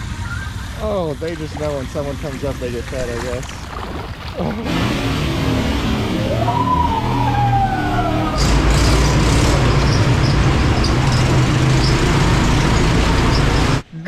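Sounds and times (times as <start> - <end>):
atv engine running: 0.0 - 13.8
falling whine: 4.3 - 13.8.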